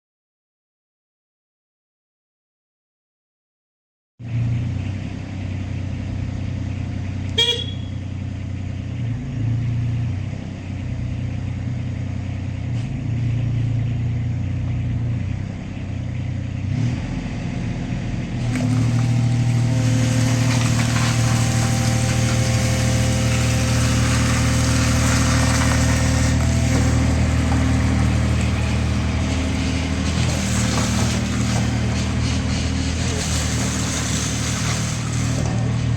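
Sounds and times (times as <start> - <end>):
diesel engine running: 4.2 - 35.9
short beep: 7.4 - 8.0
hydraulic whine: 18.4 - 35.9.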